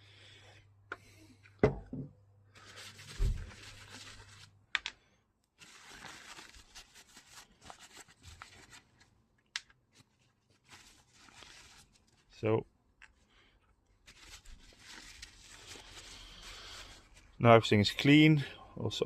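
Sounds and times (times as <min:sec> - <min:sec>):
part set down knock: 0:01.6 - 0:02.1
rustling: 0:02.6 - 0:04.5, 0:05.6 - 0:09.1, 0:09.9 - 0:12.4, 0:14.0 - 0:17.4.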